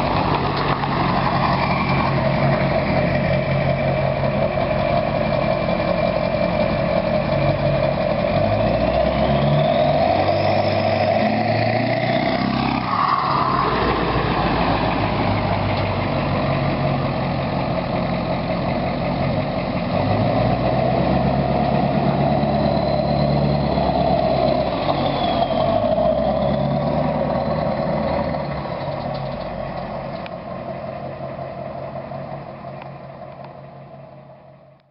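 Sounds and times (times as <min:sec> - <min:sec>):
diesel engine revving: 0:00.0 - 0:34.5.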